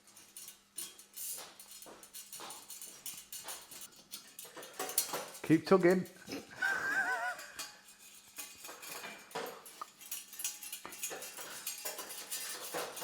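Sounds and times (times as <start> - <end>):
cable clicking in metal frame: 8.3 - 13.0.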